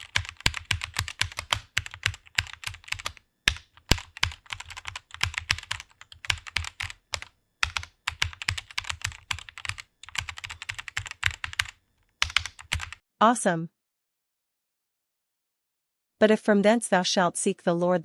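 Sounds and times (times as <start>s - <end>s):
fast typing on keyboard: 0.0s - 13.0s.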